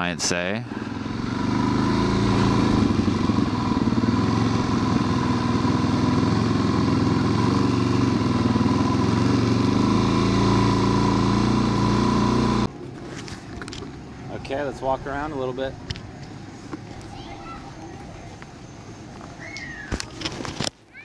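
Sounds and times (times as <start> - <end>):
motorcycle engine running: 0.6 - 19.3.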